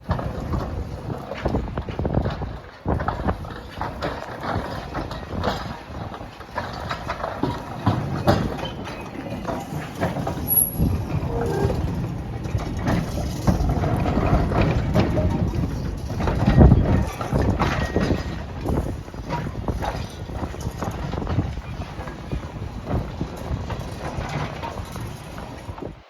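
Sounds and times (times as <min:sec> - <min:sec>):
tram wheels clattering on tracks: 0:00.0 - 0:26.0
low rumble: 0:09.4 - 0:16.8.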